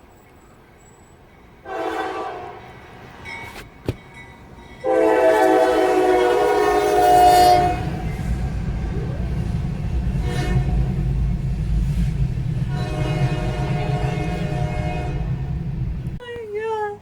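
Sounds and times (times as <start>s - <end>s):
low rumbling noise: 7.4s - 16.2s.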